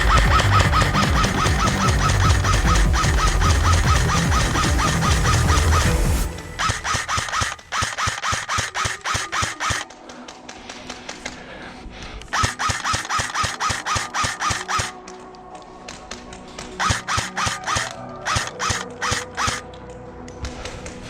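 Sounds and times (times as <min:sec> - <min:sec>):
airsoft gun rapid shots: 0:00.0 - 0:09.9, 0:12.3 - 0:15.0, 0:16.8 - 0:19.6.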